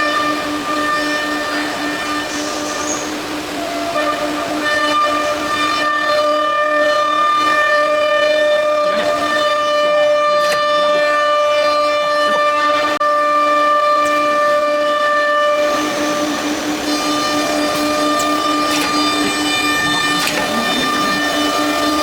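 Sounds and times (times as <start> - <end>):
router spindle whine: 0.0 - 22.0
cutting hiss: 15.4 - 22.0.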